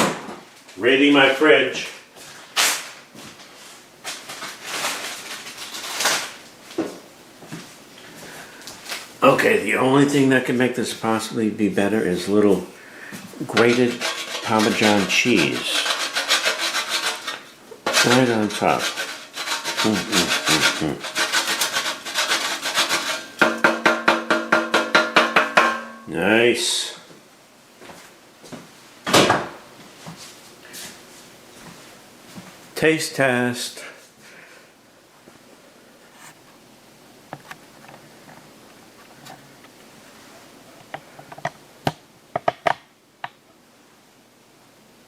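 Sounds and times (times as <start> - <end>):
cheese grating on metal grater: 13.4 - 23.4
steady tone: 25.6 - 26.3.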